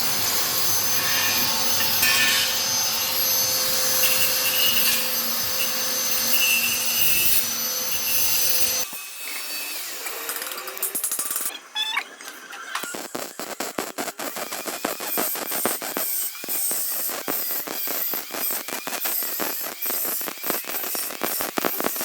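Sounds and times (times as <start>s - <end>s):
high hiss: 0.0s - 8.8s
welding arc crackling: 0.0s - 11.5s, 12.7s - 22.0s.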